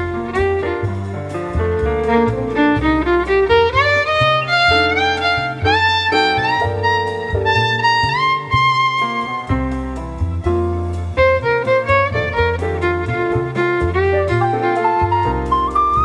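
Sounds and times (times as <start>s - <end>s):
bass line: 0.0s - 16.0s
plucked accompaniment: 0.0s - 16.0s
violin melody: 0.0s - 16.0s.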